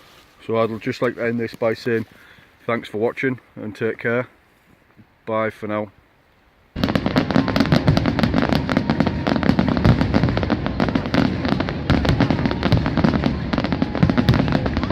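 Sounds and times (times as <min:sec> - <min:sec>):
wood fire crackling and popping: 0:06.8 - 0:14.9.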